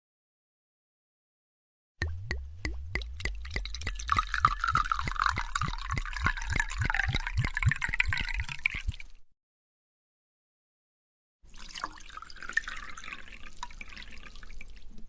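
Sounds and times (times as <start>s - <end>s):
liquid glugging from a bottle: 2.0s - 9.2s.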